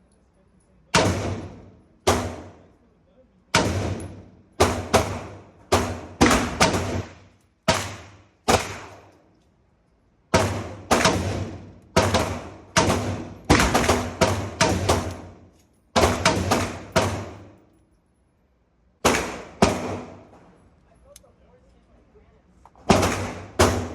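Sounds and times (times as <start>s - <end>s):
rifle shots with echo: 0.9s - 2.6s, 3.5s - 9.1s, 10.3s - 15.4s, 16.0s - 17.6s, 19.0s - 20.3s, 22.8s - 23.9s.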